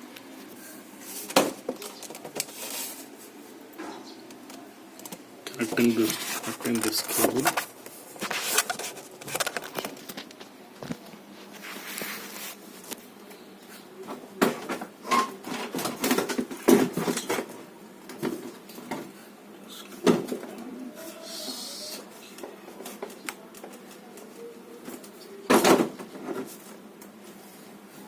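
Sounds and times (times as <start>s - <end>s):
clicks and knocks of handling: 22.3s - 27.2s.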